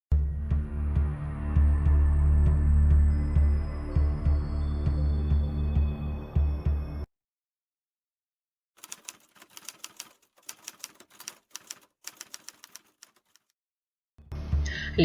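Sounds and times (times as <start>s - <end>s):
typewriter keys clacking: 8.8s - 13.5s.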